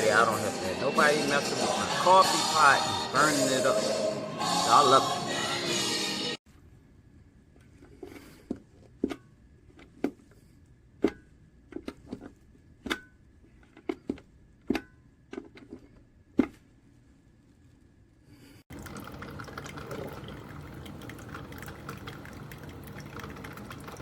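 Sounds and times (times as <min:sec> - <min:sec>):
background music: 0:00.0 - 0:06.4.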